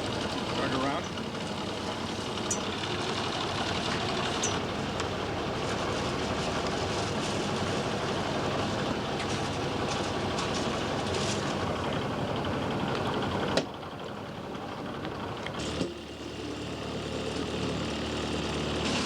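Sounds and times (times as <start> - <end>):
boat engine rumbling: 0.0 - 13.5.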